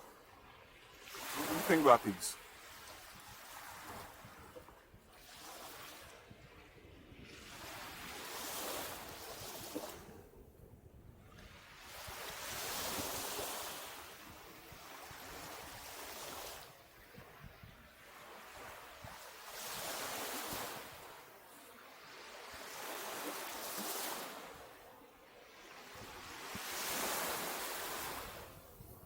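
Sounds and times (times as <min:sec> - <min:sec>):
ocean surf breaking on beach: 0:00.8 - 0:04.4, 0:11.6 - 0:16.8, 0:18.0 - 0:28.8.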